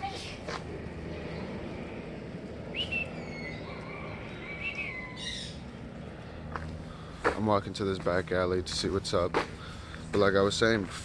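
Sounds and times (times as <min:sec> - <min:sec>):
low background hum: 0:00.0 - 0:11.0
bird calls: 0:02.7 - 0:07.2.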